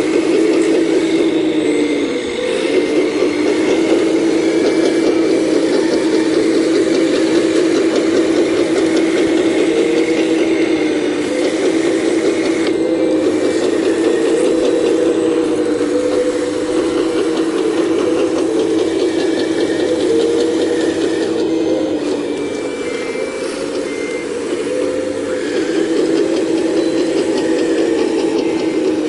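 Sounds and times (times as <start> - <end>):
excavator diesel engine: 0.0 - 29.0.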